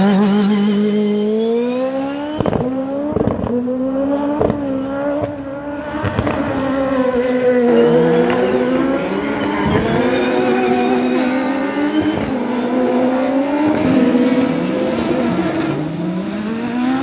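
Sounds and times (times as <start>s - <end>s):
engine running hard: 9.7s - 17.0s.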